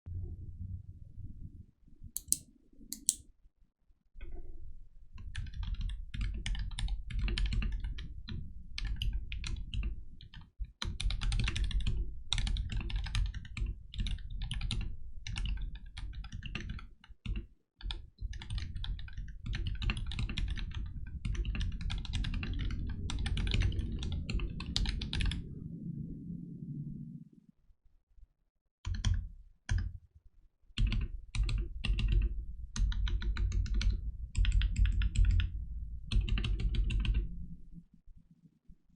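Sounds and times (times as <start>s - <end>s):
mechanical keyboard typing: 2.2s - 2.4s, 3.0s - 3.2s
sharp clicks: 2.2s - 3.2s.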